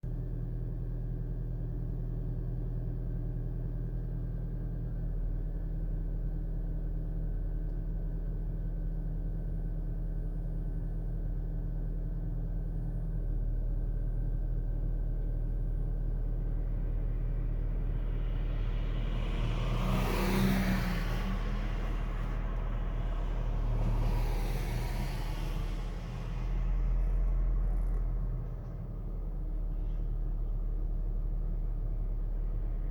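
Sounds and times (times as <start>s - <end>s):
car engine idling: 14.9s - 32.9s
vehicles passing: 16.1s - 32.9s.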